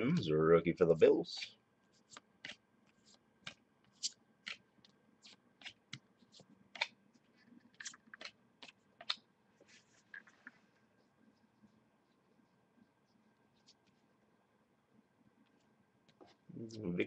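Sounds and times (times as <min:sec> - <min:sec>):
cards clicking and snapping: 0:06.8 - 0:07.0, 0:07.8 - 0:09.2.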